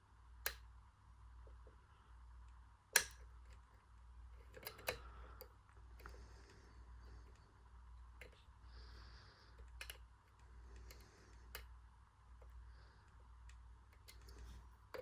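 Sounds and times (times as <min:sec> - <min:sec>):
metal clicks picking a padlock: 0:03.0 - 0:03.6, 0:04.4 - 0:06.1.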